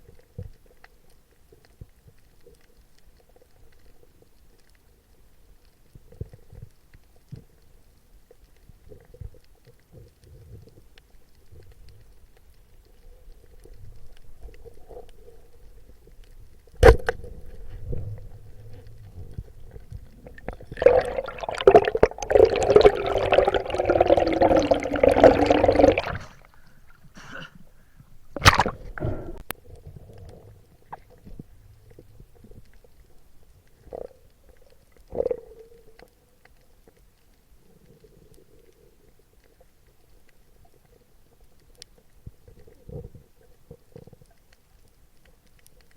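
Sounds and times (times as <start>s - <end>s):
faint underwater hum: 0.0s - 45.9s
sharp knocks underwater: 16.8s - 18.2s, 28.3s - 29.4s
bubbling and gurgling: 16.8s - 27.3s, 28.3s - 33.1s, 33.7s - 36.1s.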